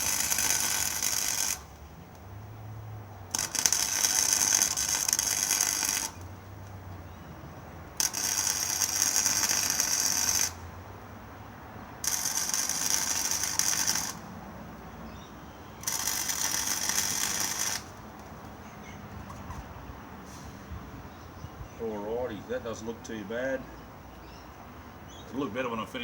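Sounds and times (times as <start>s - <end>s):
arc welder crackling: 0.0s - 7.1s, 7.8s - 10.9s, 12.0s - 15.0s, 15.6s - 19.7s.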